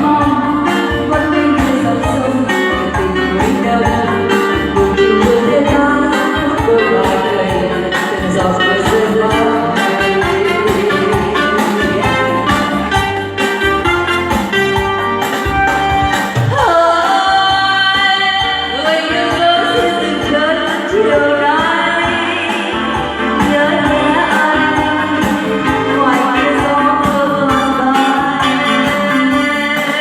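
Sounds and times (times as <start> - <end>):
sliding melody line: 0.0 - 16.8, 23.1 - 30.0
backing music with beat and bass: 0.0 - 30.0.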